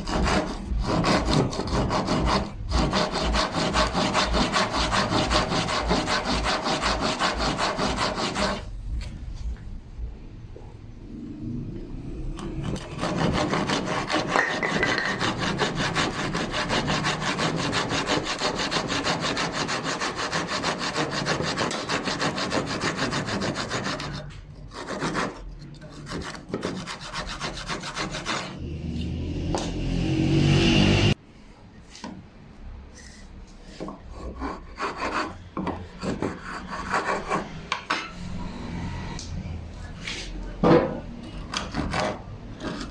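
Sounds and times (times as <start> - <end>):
hand tool scraping wood: 0.0 - 8.7, 12.6 - 28.6.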